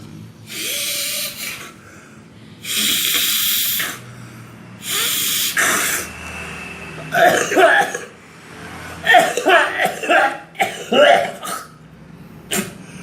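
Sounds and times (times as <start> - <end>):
person snorting through nose: 2.6 - 4.0, 4.8 - 6.1, 12.5 - 13.0.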